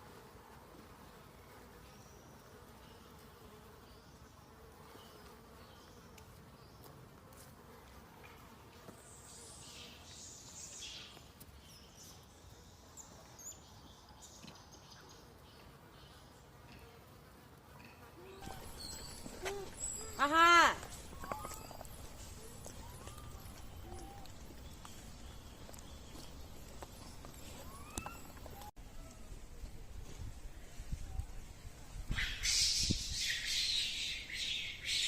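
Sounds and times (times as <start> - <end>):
faint insect buzzing: 0.0 - 12.3.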